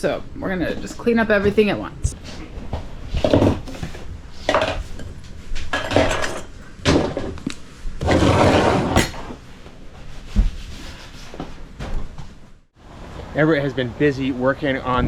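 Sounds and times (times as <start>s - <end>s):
dishes and cutlery clattering: 4.5s - 7.4s.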